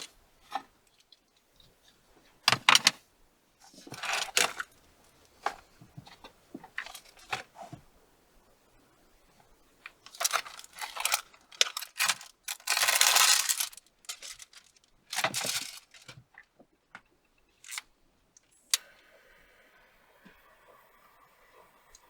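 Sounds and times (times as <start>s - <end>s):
small objects rustling and clattering: 0.0s - 3.0s, 3.6s - 7.8s, 9.4s - 18.6s.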